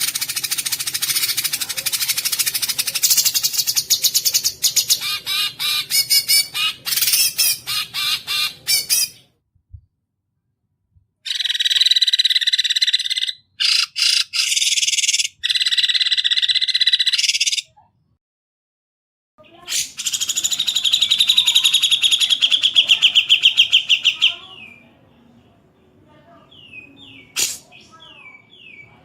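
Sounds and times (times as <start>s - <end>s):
bird trill: 0.0s - 9.3s, 11.3s - 17.7s, 19.4s - 24.8s.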